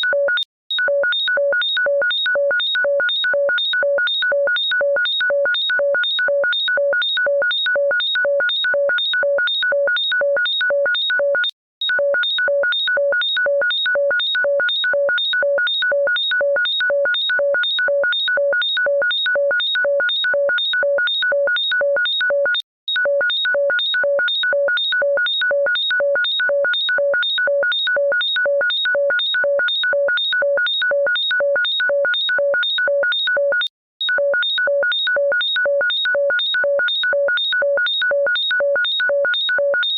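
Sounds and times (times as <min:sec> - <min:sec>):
electronic ringtone beeps: 0:27.1 - 0:39.9.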